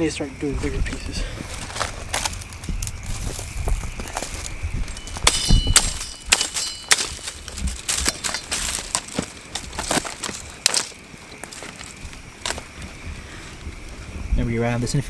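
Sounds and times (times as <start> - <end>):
metallic clang: 4.8 - 11.9
axe chopping firewood: 5.0 - 11.8.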